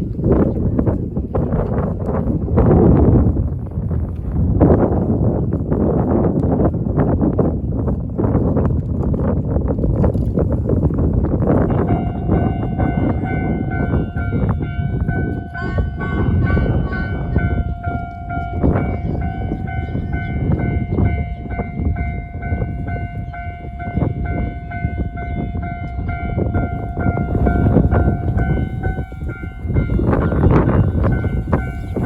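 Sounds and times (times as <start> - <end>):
wind noise on microphone: 0.0 - 32.0
train passing: 10.9 - 32.0
level crossing warning bell: 11.6 - 32.0.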